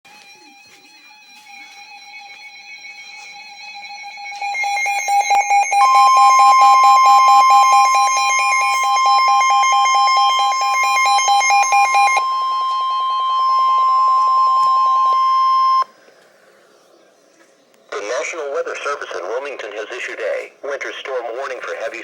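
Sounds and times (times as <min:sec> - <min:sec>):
continuous high steady tone: 0:01.3 - 0:16.7
rapid electronic beeping: 0:04.1 - 0:15.9.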